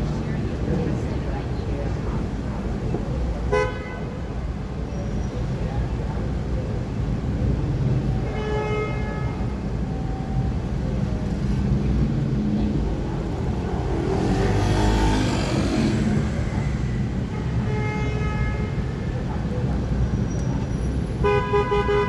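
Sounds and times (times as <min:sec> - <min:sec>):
city traffic rumbling: 0:00.0 - 0:22.0
car horn: 0:03.5 - 0:04.2, 0:17.2 - 0:19.1, 0:21.1 - 0:22.0
vehicle passing: 0:11.3 - 0:17.3.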